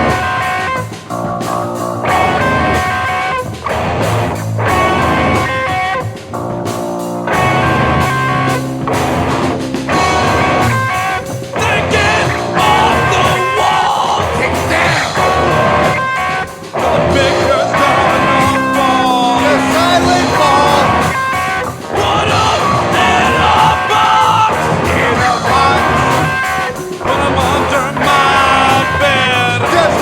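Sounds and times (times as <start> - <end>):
bass and drums: 0.0 - 30.0
distorted electric guitars: 0.0 - 30.0.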